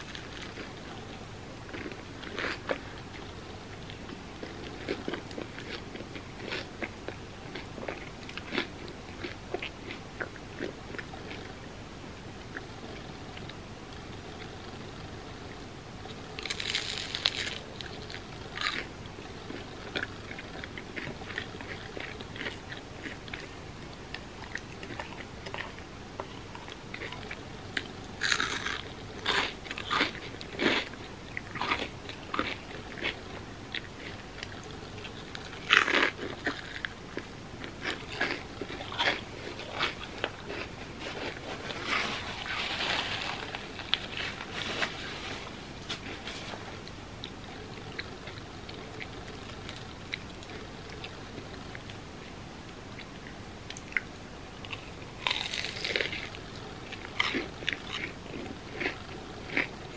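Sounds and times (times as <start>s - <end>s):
loud crunching bites: 16.4s - 18.9s, 55.2s - 56.4s
quiet chewing clicks: 46.8s - 59.9s.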